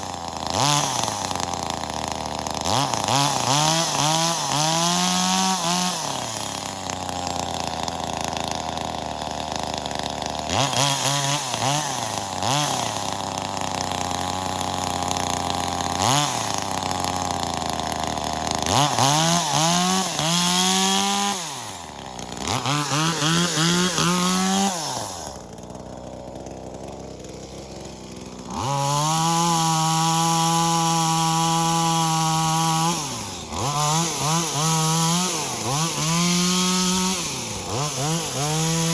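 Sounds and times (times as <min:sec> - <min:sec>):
chainsaw revving while cutting wood: 0:00.0 - 0:38.9.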